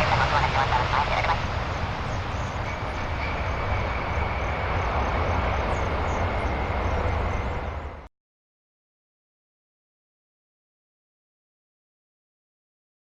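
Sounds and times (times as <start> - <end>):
high engine whine: 0.0 - 8.1
jet engines rumbling: 0.0 - 8.1.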